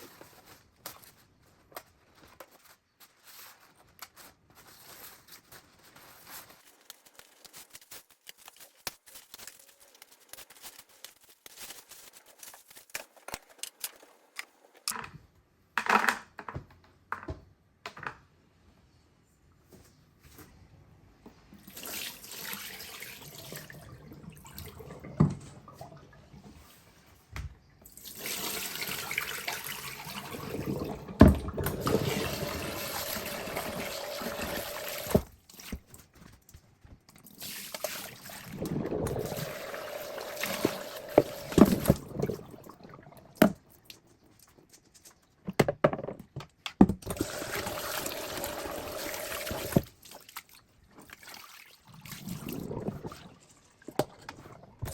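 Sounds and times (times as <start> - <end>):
tap water running into sink: 28.0 - 35.3, 37.4 - 42.8, 47.0 - 50.0.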